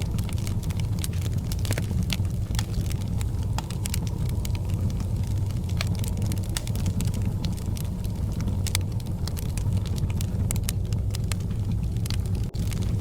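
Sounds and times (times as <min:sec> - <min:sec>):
wood fire crackling and popping: 0:00.0 - 0:13.0.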